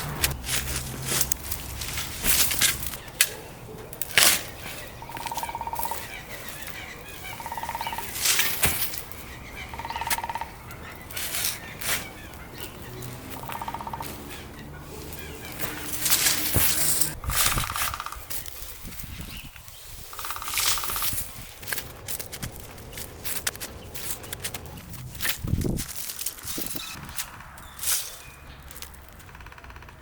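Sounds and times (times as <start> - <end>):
sharp rustling or scraping: 0.0 - 29.2
outdoor ambience: 0.0 - 30.0
bird trilling: 2.4 - 18.4, 20.1 - 21.4.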